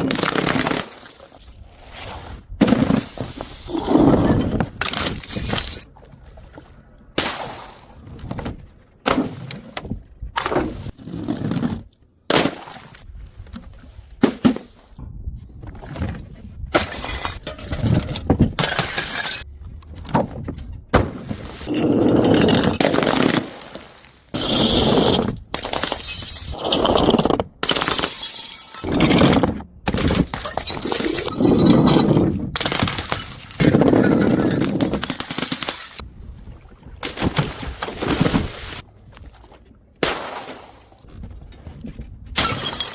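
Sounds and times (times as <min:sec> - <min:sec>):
glass bottles smashing: 0:18.6 - 0:19.4, 0:21.7 - 0:29.2, 0:29.9 - 0:36.0, 0:42.4 - 0:42.9
glass shards tinkling: 0:28.1 - 0:28.9.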